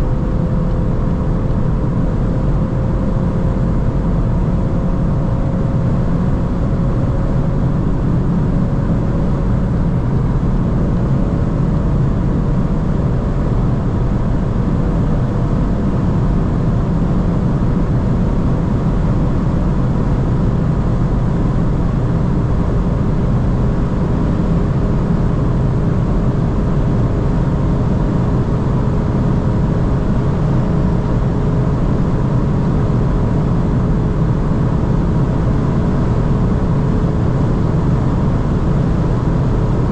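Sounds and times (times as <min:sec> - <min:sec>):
car engine drone: 0:00.0 - 0:39.9.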